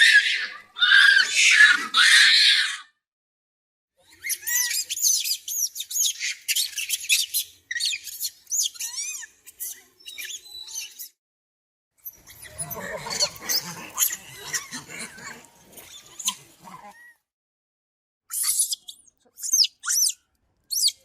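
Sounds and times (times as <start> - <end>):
monkey screeching: 0.0 - 3.0, 4.1 - 11.1, 12.0 - 17.1, 18.3 - 21.0
monkey chirps and squeaks: 4.1 - 11.2, 12.0 - 14.8, 18.3 - 21.0.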